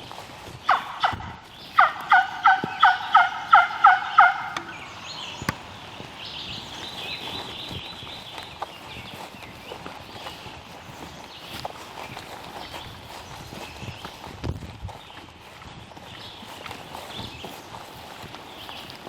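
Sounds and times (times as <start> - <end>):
wild turkey yelping: 0.7 - 5.3.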